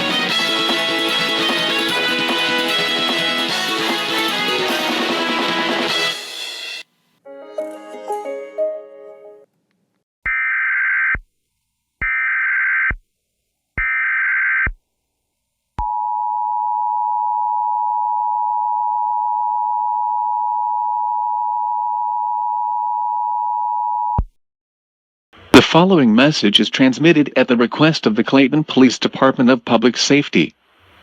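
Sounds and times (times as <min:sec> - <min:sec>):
music notes: 0:07.3 - 0:09.4.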